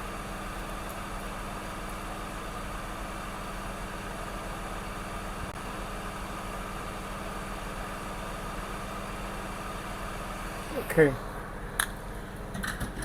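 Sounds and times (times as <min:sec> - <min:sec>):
electric fan whirring: 0:00.0 - 0:13.0.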